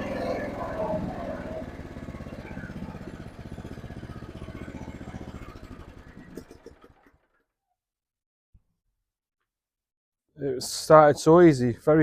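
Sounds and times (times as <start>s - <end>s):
wood chipper engine running: 0.0s - 7.4s.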